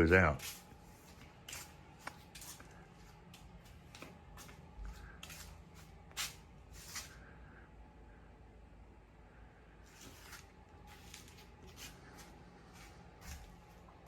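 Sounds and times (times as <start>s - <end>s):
materials rustling and scraping: 9.9s - 13.6s.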